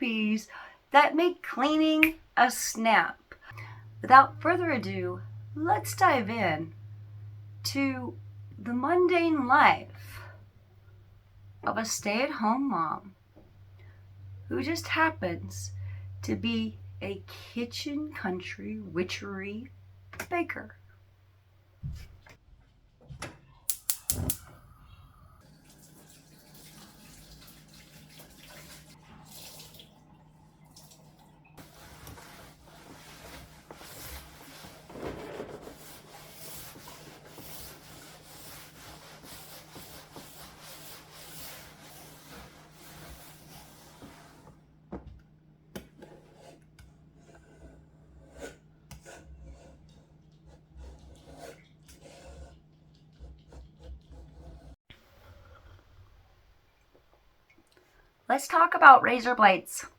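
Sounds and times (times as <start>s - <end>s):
faint low hum: 3.3s - 26.2s
tap water running into sink: 25.4s - 33.0s.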